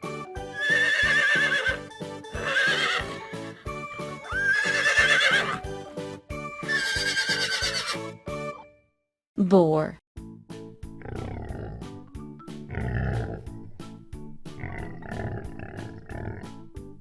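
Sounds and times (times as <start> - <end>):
horse whinnying: 0.5 - 3.6, 4.2 - 5.7, 6.6 - 8.1.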